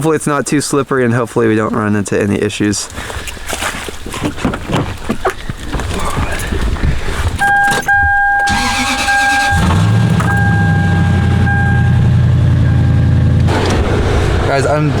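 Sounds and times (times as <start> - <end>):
car engine starting and idling: 7.3 - 15.0
warning chime tone: 7.4 - 13.4.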